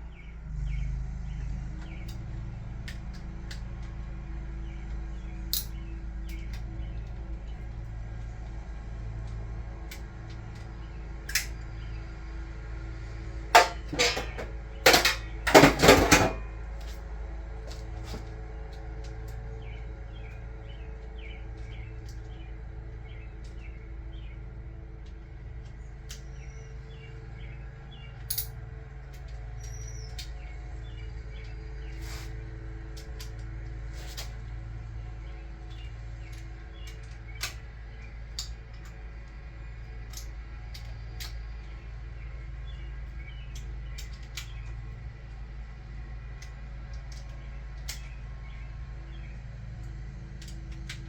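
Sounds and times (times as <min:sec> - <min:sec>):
steady hum: 0:00.0 - 0:51.0
hand tools knocking: 0:13.6 - 0:16.4
light repeated clicks: 0:40.0 - 0:41.7, 0:49.8 - 0:51.0.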